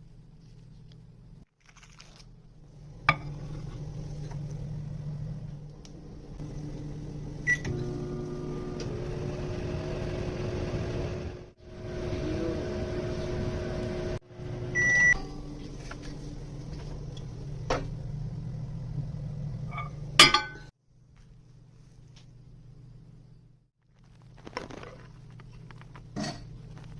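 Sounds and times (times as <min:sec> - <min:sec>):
microwave oven humming: 0:02.6 - 0:20.4.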